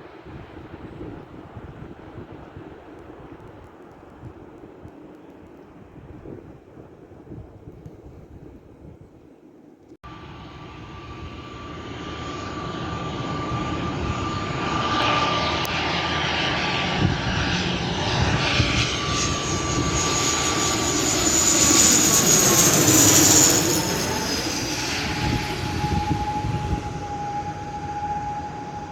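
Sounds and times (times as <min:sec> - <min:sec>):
airliner engines whining: 0:10.1 - 0:28.9.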